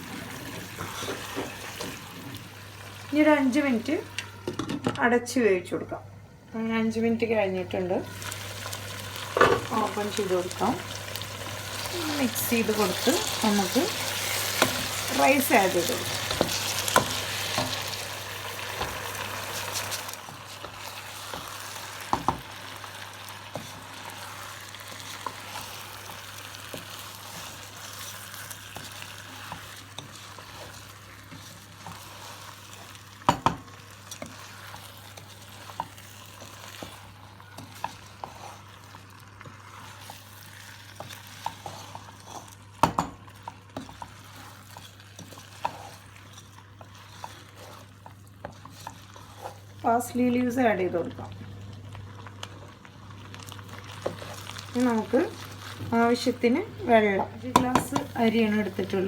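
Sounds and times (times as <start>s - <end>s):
food sizzling in a pot: 0.0s - 4.8s, 6.9s - 59.0s
metal spoon knocking on pot: 57.2s - 58.1s.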